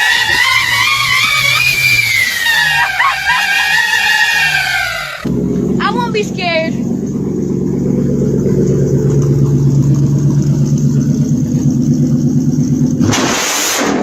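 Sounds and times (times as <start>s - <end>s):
hissing noise: 0.0s - 5.3s
car engine idling: 0.0s - 13.1s.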